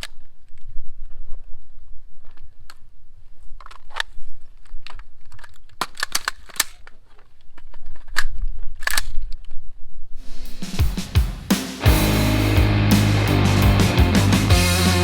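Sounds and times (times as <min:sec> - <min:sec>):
firearm handling clicks and clacks: 0:03.6 - 0:09.6.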